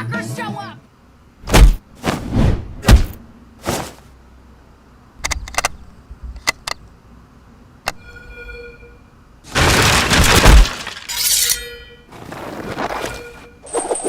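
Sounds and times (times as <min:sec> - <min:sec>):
brief ringing tone: 0:08.0 - 0:09.1.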